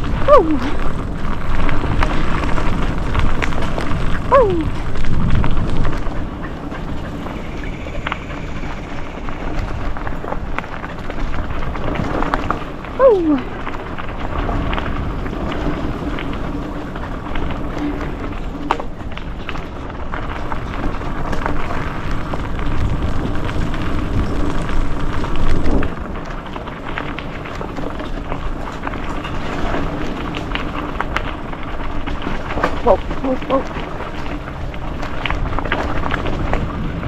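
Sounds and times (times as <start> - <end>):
bike clicking and rattling: 0.0 - 37.0
bike tyres rolling over dirt: 0.0 - 37.0
wind rumbling on microphone: 0.0 - 37.0.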